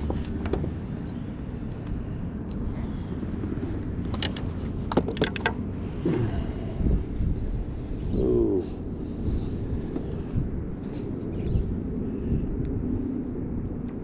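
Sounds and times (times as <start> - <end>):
wind buffeting microphone: 0.0 - 14.0
sharp clicks and rattles: 3.9 - 5.7.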